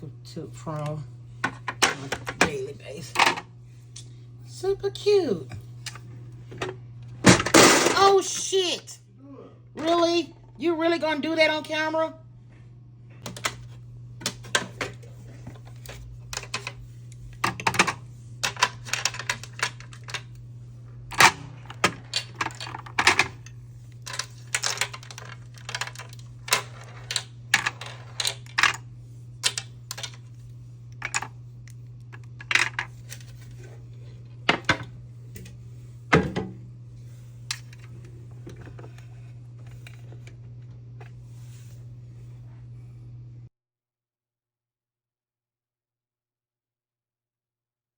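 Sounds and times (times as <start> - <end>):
steady low hum: 0.0 - 43.5.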